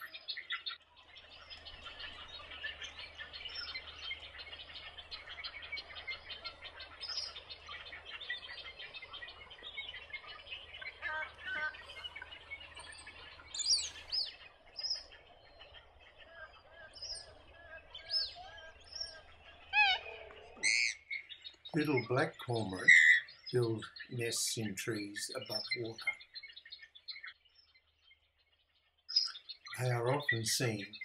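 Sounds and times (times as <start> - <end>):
loud bird call: 0.0 - 26.6, 29.1 - 31.0
birds chirping in chorus: 0.0 - 31.0.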